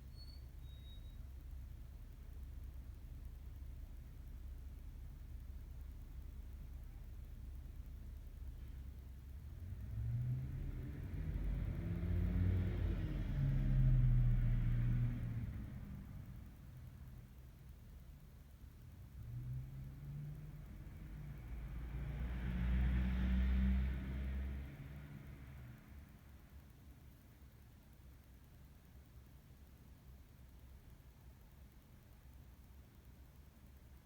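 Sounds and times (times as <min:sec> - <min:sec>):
car passing: 0:09.5 - 0:16.6, 0:19.3 - 0:26.4.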